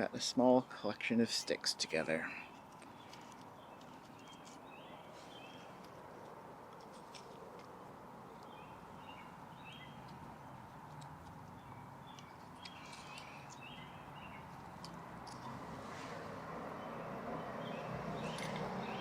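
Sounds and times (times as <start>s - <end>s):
outdoor background noise: 0.0s - 19.0s
bird chirping: 1.8s - 6.2s, 8.2s - 19.0s.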